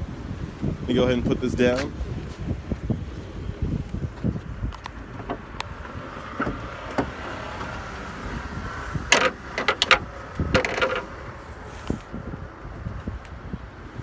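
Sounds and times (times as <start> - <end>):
car hood latching shut: 4.8 - 7.8, 9.0 - 11.1.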